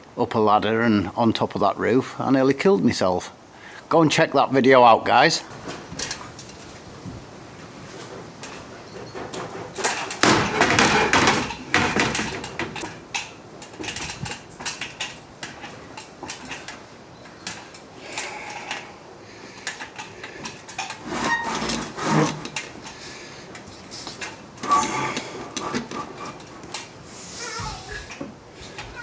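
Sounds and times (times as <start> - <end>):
scraping rustle: 5.3 - 29.0
metal tools clattering: 8.0 - 18.9, 19.6 - 23.0.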